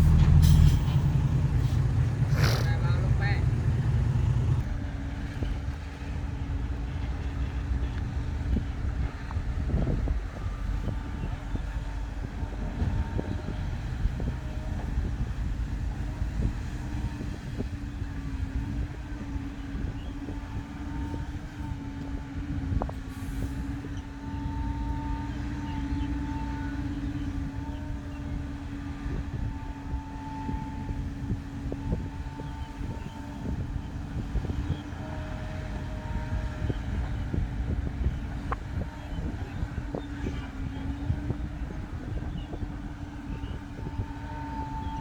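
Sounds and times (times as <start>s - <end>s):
heavy diesel machinery running: 0.0s - 45.0s.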